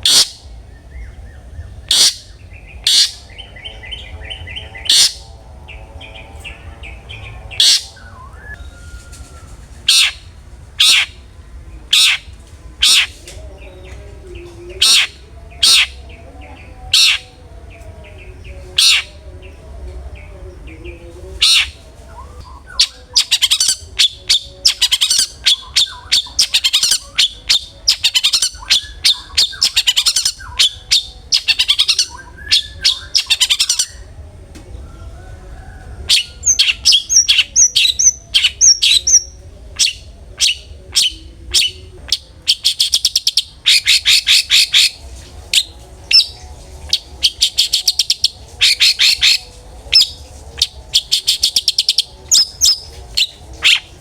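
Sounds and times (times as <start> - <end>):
shrike sharp notes and chattering: 0.0 - 8.4, 14.1 - 19.7, 22.5 - 34.1, 36.4 - 54.0.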